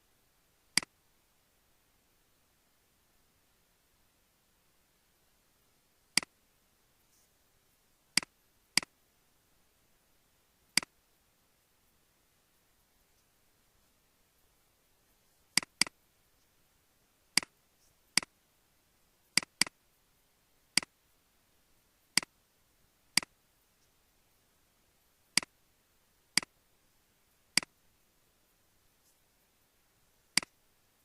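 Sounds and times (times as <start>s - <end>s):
computer mouse clicking: 15.6s - 16.0s, 19.3s - 19.8s.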